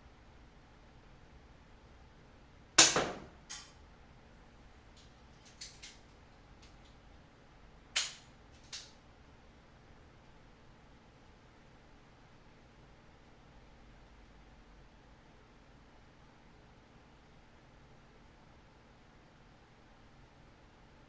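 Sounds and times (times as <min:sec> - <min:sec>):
bullet striking steel target: 0:02.8 - 0:03.6
handgun shots: 0:02.8 - 0:03.7, 0:08.0 - 0:08.8
gun handling clicks: 0:02.8 - 0:03.8, 0:05.0 - 0:06.0, 0:08.0 - 0:09.0.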